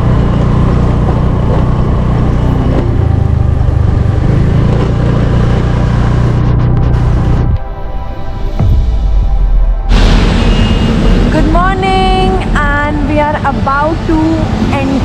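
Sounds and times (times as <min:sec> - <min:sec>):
motorcycle engine rumble: 0:00.0 - 0:07.9
road noise: 0:00.0 - 0:15.0.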